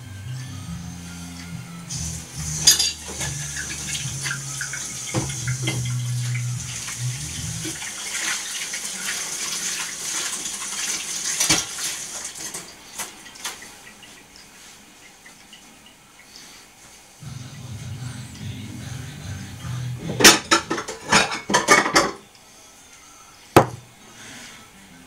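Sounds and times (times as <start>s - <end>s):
water running from a tap: 1.9s - 16.3s.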